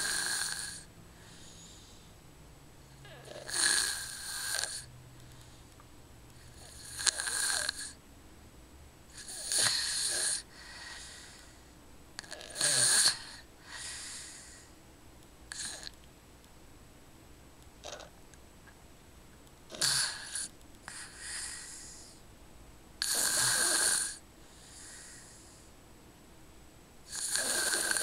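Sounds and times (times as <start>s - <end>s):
person snoring: 0.0s - 1.8s, 3.0s - 4.9s, 6.4s - 8.0s, 9.1s - 11.5s, 12.2s - 14.7s, 15.5s - 15.9s, 19.7s - 22.2s, 23.0s - 25.5s, 27.1s - 28.0s
soft breath: 0.7s - 2.3s, 4.1s - 6.9s, 9.2s - 11.8s, 13.1s - 14.8s, 19.8s - 22.3s, 24.4s - 25.8s.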